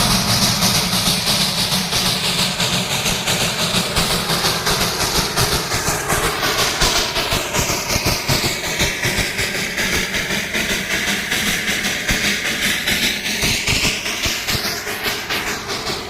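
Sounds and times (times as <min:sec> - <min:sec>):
train wheels clattering over rails: 0:00.0 - 0:16.0.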